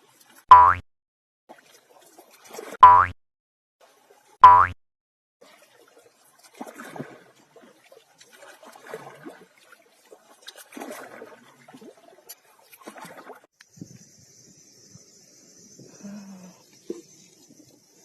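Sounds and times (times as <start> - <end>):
water trickling and splashing: 0.0 - 0.5, 1.5 - 3.1, 3.8 - 4.4, 5.4 - 13.8
cartoon boing: 0.5 - 0.8, 2.8 - 3.2, 4.4 - 4.8.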